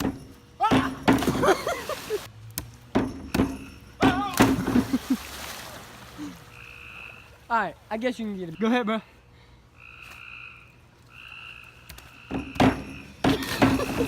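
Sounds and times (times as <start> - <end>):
sharp knocks and thuds: 0.0 - 1.6, 2.6 - 5.0, 12.3 - 14.0
frogs croaking: 6.2 - 14.0.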